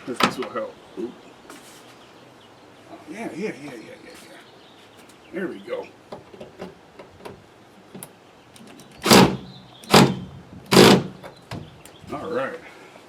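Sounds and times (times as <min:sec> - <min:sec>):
power screwdriver driving screws: 0:09.0 - 0:11.2.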